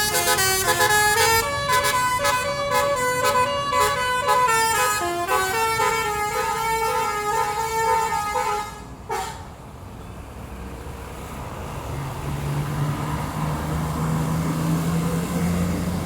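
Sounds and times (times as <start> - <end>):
bus musical horn tune: 0.0 - 9.6.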